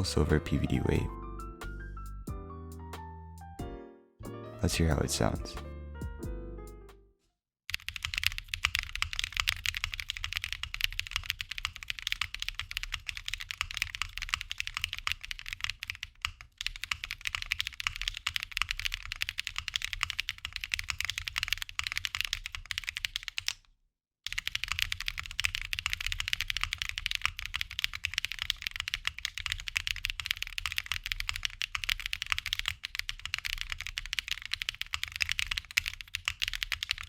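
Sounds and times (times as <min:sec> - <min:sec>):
mechanical keyboard typing: 0:07.7 - 0:23.6, 0:24.3 - 0:37.0.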